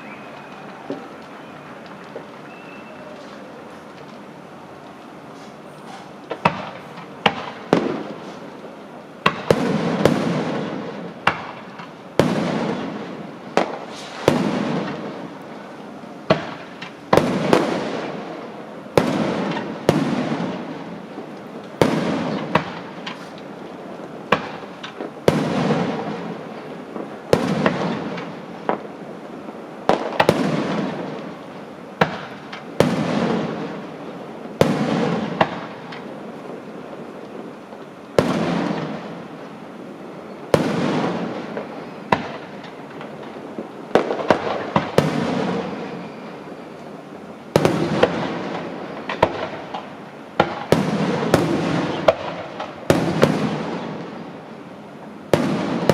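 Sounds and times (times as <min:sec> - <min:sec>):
fireworks bangs and crackle: 0:00.0 - 0:55.9.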